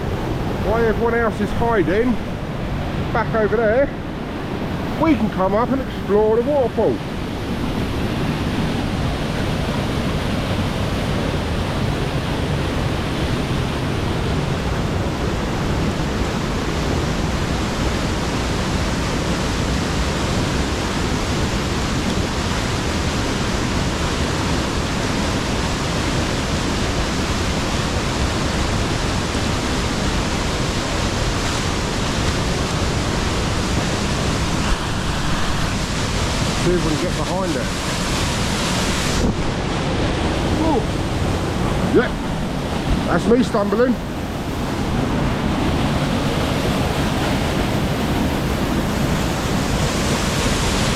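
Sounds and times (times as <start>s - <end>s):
waterfall rushing: 0.0s - 50.9s.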